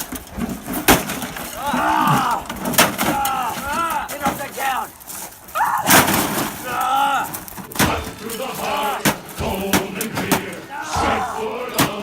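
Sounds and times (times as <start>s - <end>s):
hand tool smashing microwave oven: 0.0s - 4.5s, 5.9s - 6.8s
excited yelling: 1.6s - 4.9s, 5.5s - 9.6s, 10.4s - 12.0s.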